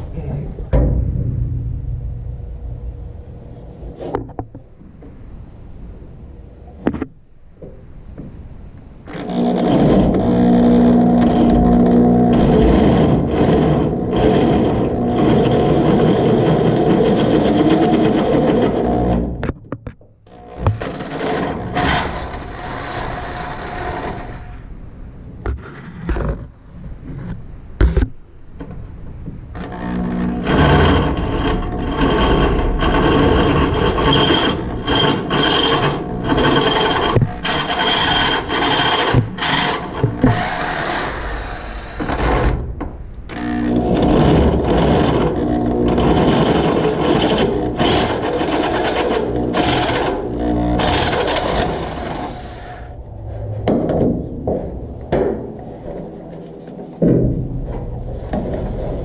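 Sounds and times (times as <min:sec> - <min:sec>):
electric drill grinding through metal: 0:09.1 - 0:19.3, 0:20.3 - 0:24.7, 0:29.6 - 0:42.6, 0:43.3 - 0:53.0.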